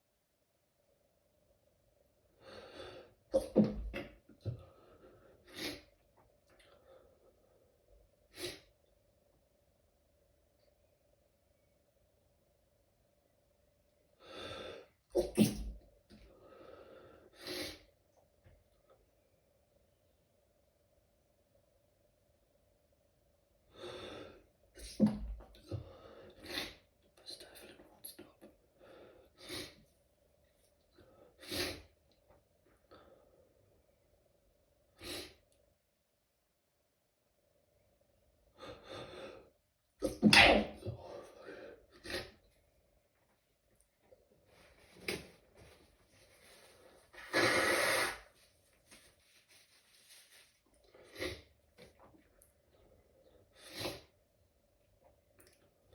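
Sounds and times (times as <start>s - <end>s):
person sneezing: 3.3s - 4.0s, 15.1s - 15.8s, 40.0s - 41.2s, 47.2s - 48.3s.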